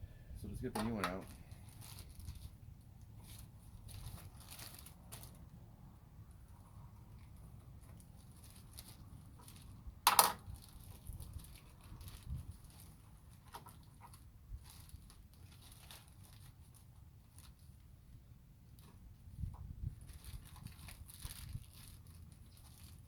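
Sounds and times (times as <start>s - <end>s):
packaging rustling: 0.9s - 2.6s, 3.2s - 5.5s, 7.2s - 17.8s, 19.9s - 23.0s.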